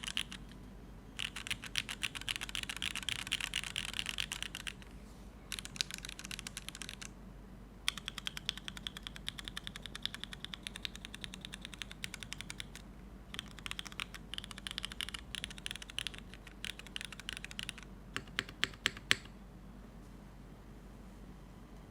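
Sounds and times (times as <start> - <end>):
typing on mechanical keyboard: 0.0 - 0.6, 1.2 - 4.8, 5.5 - 7.1, 7.9 - 19.3.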